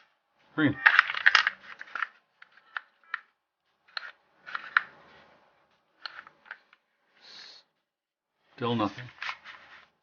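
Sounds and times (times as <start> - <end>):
crayons clicking and knocking: 0.8 - 3.3.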